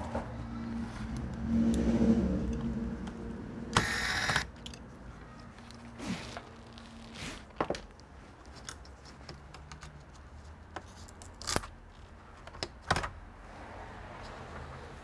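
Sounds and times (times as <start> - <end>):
small parts and tools clicking: 2.5 - 5.8.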